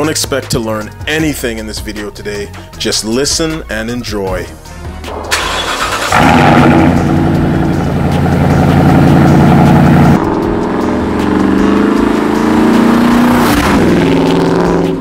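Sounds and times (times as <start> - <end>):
deep loud engine exhaust: 5.1 - 15.0.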